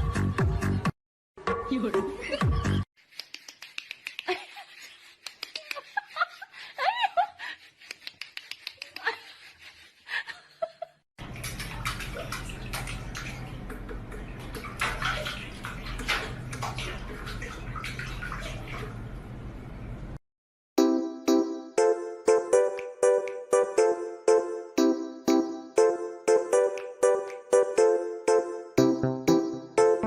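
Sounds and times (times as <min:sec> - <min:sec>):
running water splashing: 0:11.2 - 0:19.2.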